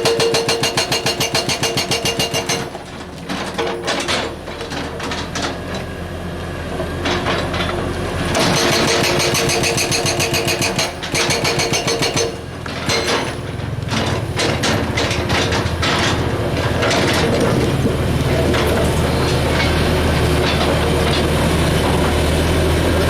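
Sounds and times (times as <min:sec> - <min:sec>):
hydraulic breaker hammering rock: 0:00.0 - 0:04.0, 0:08.2 - 0:19.9
excavator diesel engine running: 0:00.0 - 0:23.0.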